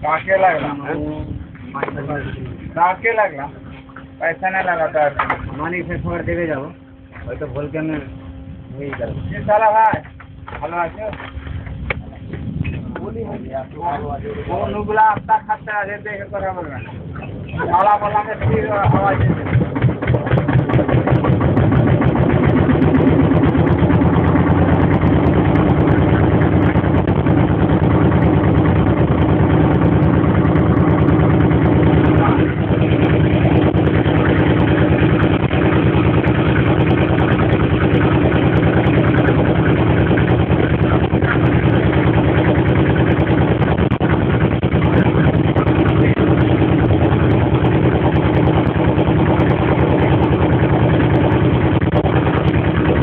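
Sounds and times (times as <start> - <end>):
motorboat engine running: 0.0 - 53.0.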